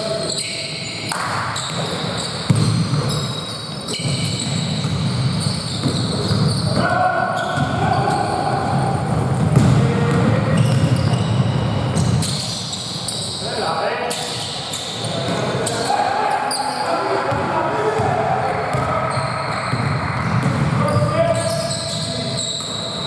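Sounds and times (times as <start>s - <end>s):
basketball bouncing on court: 1.1s - 6.8s, 7.4s - 12.4s, 17.3s - 22.0s
players' voices: 6.7s - 11.9s, 13.3s - 22.7s.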